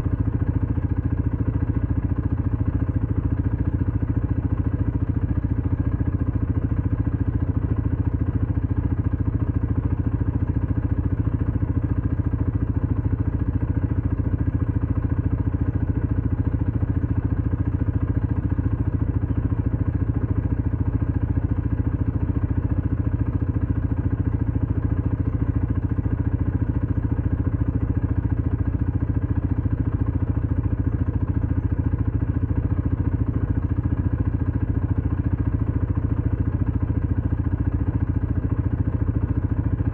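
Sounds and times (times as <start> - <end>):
engine droning steadily: 0.0 - 39.9.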